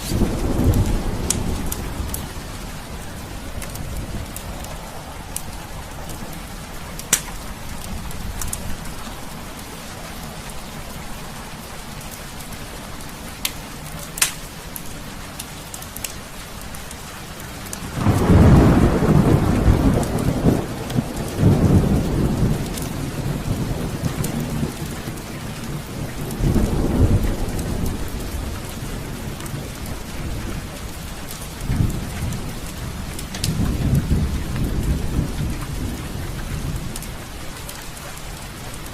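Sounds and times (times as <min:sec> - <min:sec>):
thunder rolling: 0:00.0 - 0:09.5, 0:17.9 - 0:37.5
wood fire crackling: 0:00.0 - 0:10.9, 0:11.8 - 0:23.2
heavy rain falling: 0:00.0 - 0:38.9.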